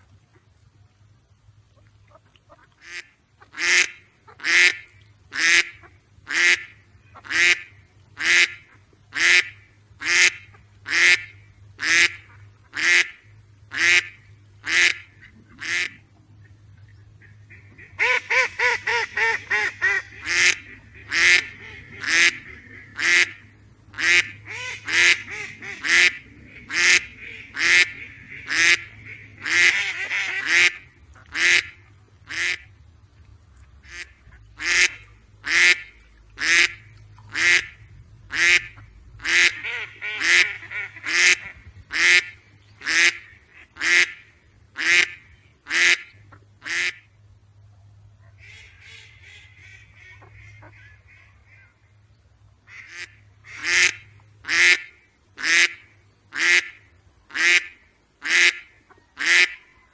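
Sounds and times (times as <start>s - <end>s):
duck quacking: 2.1s - 16.0s, 17.2s - 32.7s, 33.8s - 47.1s, 48.3s - 51.8s, 52.7s - 59.7s.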